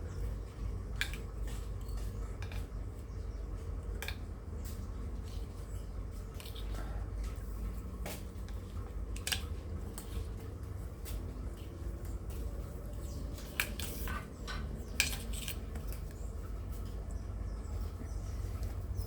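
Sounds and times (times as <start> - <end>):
steady low hum: 0.0 - 19.0
light clinks and taps: 0.5 - 2.8.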